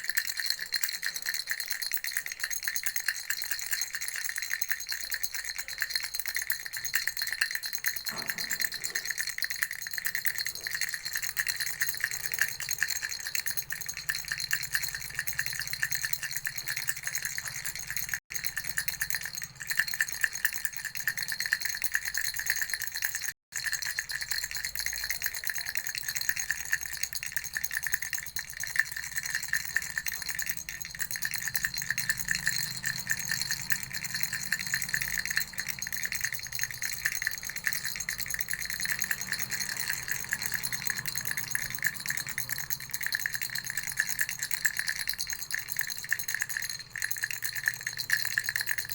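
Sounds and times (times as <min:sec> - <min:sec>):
baby rattle shaking: 0:00.0 - 0:48.9.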